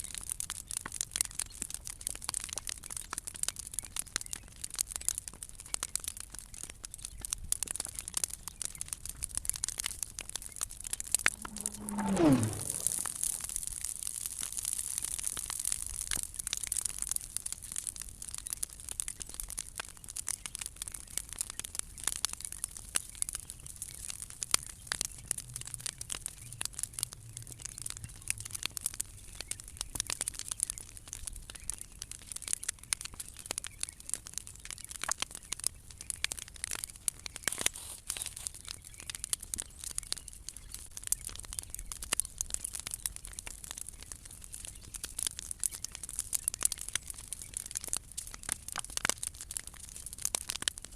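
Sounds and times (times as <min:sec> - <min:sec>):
bonfire crackling and popping: 0:00.0 - 0:50.9
fire hissing: 0:11.2 - 0:13.8, 0:37.5 - 0:38.6.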